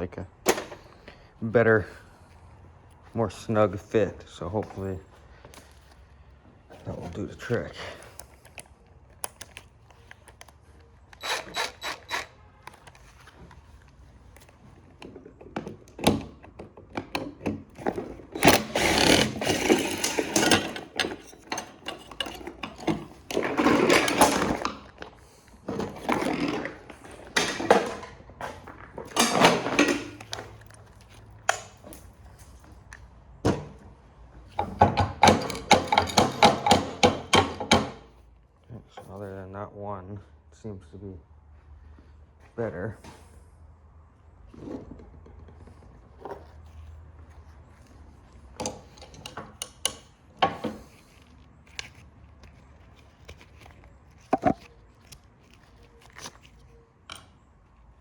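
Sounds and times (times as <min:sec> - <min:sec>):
power driver whirring: 0:11.1 - 0:12.8, 0:17.9 - 0:24.7
metal knocks and clinks: 0:17.1 - 0:25.0, 0:34.6 - 0:38.0.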